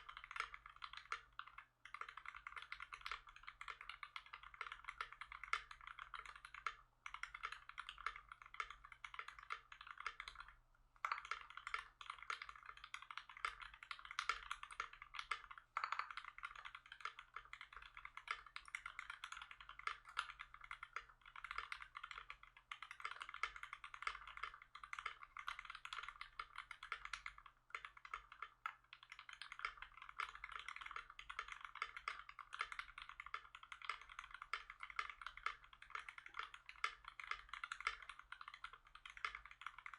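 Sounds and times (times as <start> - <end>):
mechanical keyboard typing clacks: 0.0 - 39.9.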